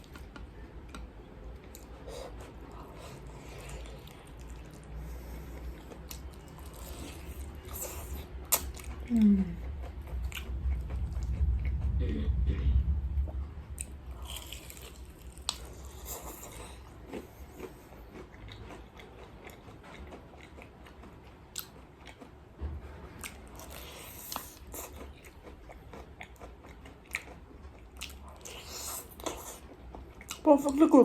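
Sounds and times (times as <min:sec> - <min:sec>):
crunchy chewing: 0:01.6 - 0:12.0, 0:13.8 - 0:22.4.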